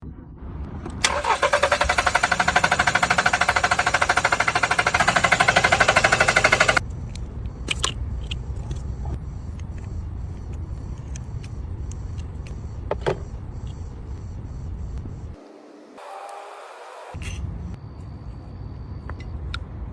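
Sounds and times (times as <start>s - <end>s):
car engine rumbling: 0.0s - 15.4s
starter motor cranking engine: 1.0s - 6.8s.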